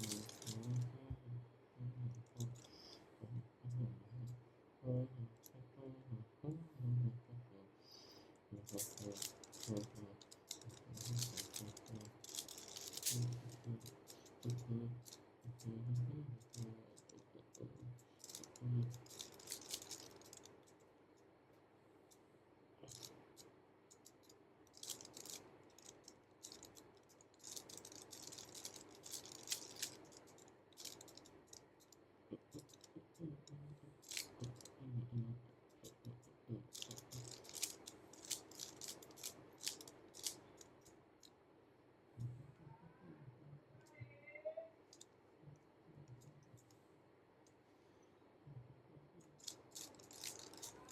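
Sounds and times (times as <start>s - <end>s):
puzzle cube clicking and rattling: 0.0s - 1.0s, 8.6s - 20.8s, 22.8s - 23.2s, 23.9s - 34.8s, 35.8s - 40.8s, 49.3s - 50.9s.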